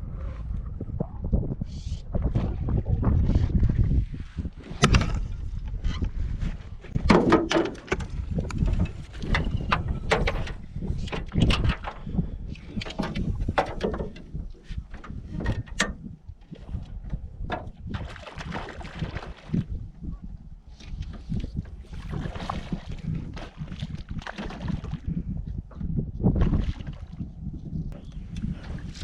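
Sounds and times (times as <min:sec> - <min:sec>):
wind noise on microphone: 0:00.0 - 0:29.0
knocks and clunks of boat gear: 0:04.5 - 0:18.6.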